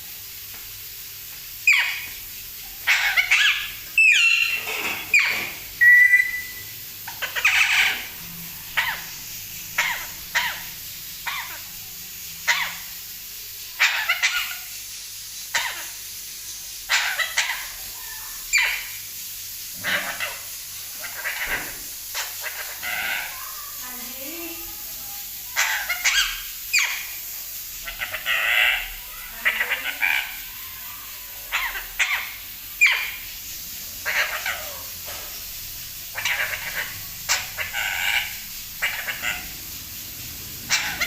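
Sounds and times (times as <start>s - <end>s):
parrot whistling: 2.8s - 9.1s, 40.7s - 41.0s.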